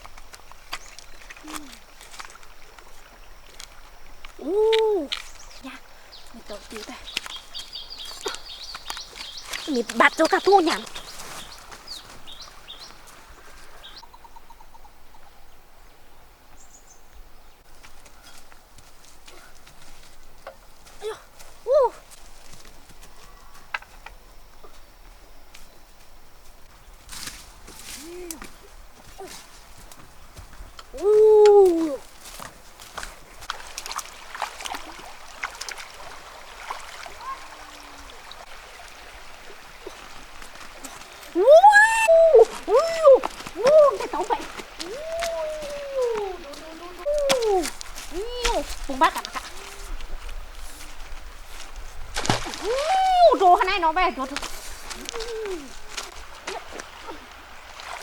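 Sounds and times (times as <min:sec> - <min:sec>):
water splashing and trickling: 0:00.0 - 0:14.0, 0:27.1 - 0:58.0
faint outdoor background: 0:00.0 - 0:58.0
birds chirping: 0:05.1 - 0:18.3, 0:37.2 - 0:49.9.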